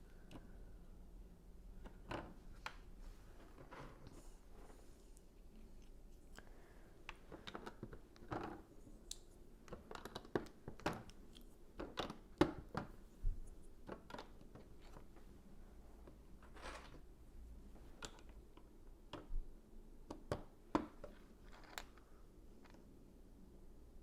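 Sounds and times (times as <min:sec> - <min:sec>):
plastic bricks clicking and rattling: 0:09.7 - 0:11.1.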